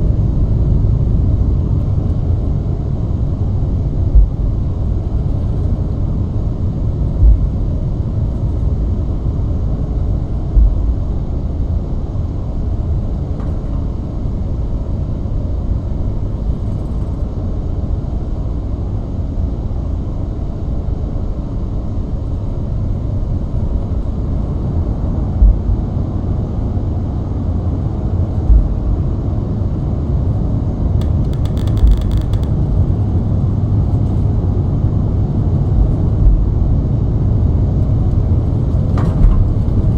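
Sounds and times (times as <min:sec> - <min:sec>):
airplane rumble in flight: 0:00.0 - 0:39.9
brief low thumps: 0:25.4 - 0:25.8, 0:28.5 - 0:28.9.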